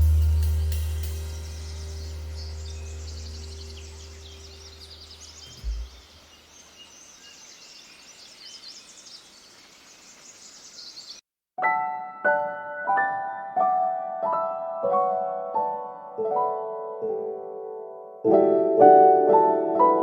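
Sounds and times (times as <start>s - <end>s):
piano music: 0.0s - 5.8s, 11.6s - 20.0s
low music: 0.0s - 5.9s
songbirds chirping and singing: 0.7s - 11.2s
low thump: 5.5s - 6.1s.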